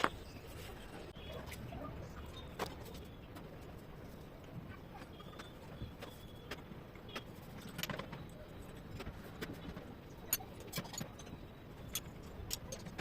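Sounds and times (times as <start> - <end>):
metal tools clicking and clinking: 10.2 - 13.0.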